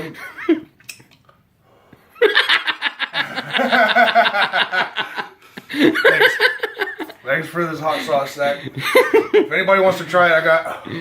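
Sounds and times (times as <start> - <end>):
person laughing: 2.2 - 7.1.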